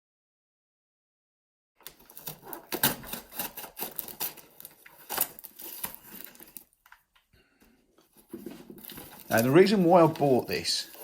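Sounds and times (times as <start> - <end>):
package being torn open: 1.8 - 6.8.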